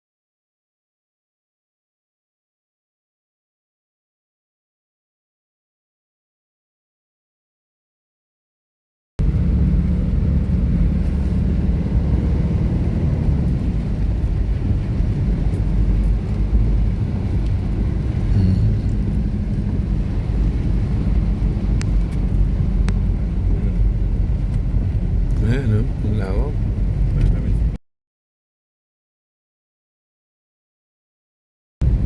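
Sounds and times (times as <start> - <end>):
moving vehicle rumble: 9.2 - 27.8.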